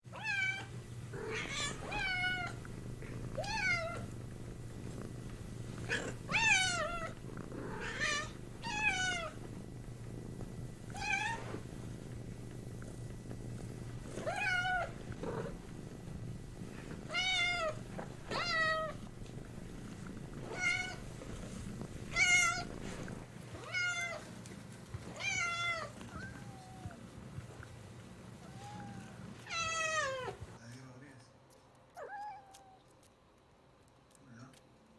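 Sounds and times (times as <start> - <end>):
cat meowing: 0.1 - 2.6, 3.4 - 4.1, 5.9 - 7.1, 7.7 - 9.4, 14.2 - 14.9, 17.0 - 19.0, 25.2 - 27.0, 28.4 - 30.4.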